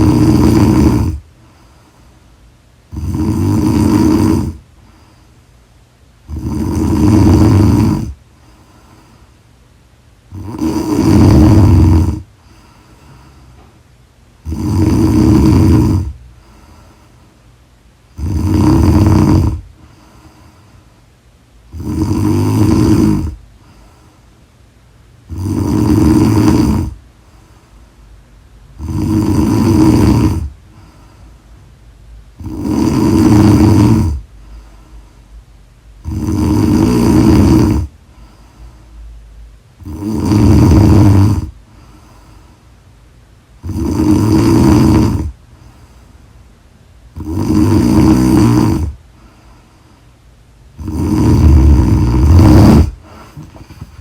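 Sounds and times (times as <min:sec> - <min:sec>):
woman snoring loudly: 0:00.0 - 0:01.2, 0:02.9 - 0:04.6, 0:06.3 - 0:08.2, 0:10.3 - 0:12.3, 0:14.4 - 0:16.2, 0:18.2 - 0:19.7, 0:21.7 - 0:23.4, 0:25.3 - 0:27.0, 0:28.8 - 0:30.5, 0:32.4 - 0:34.2, 0:36.0 - 0:37.9, 0:39.8 - 0:41.6, 0:43.6 - 0:45.4, 0:47.2 - 0:49.0, 0:50.8 - 0:54.0.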